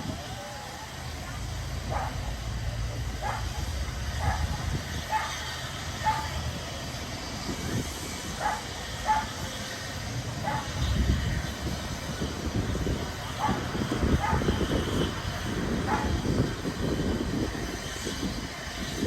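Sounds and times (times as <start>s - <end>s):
train rumbling: 0.0s - 19.0s.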